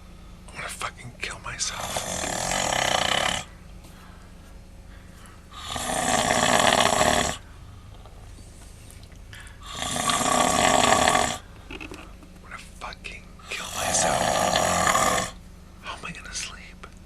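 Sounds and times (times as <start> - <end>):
breathing: 0.0 - 0.5, 3.8 - 5.7, 7.4 - 9.7
man snoring loudly: 1.7 - 3.5, 5.6 - 7.4, 9.6 - 11.5, 13.5 - 15.4.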